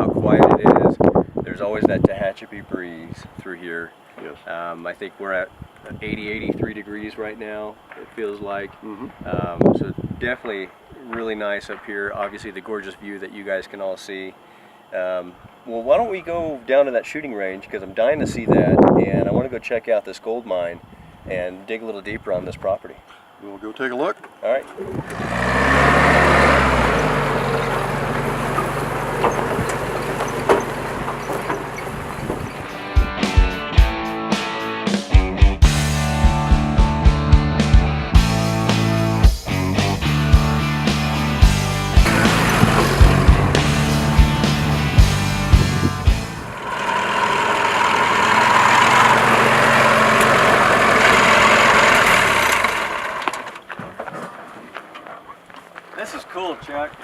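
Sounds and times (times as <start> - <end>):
car engine driving off: 24.9 - 32.9, 39.9 - 53.7
knocks and rattles: 26.8 - 32.8, 42.0 - 45.9.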